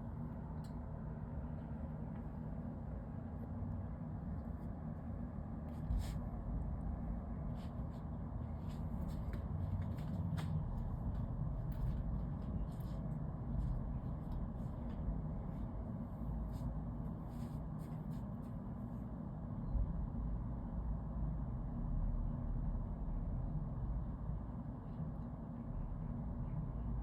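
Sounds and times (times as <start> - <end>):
distant city traffic rumble: 0.0 - 27.0.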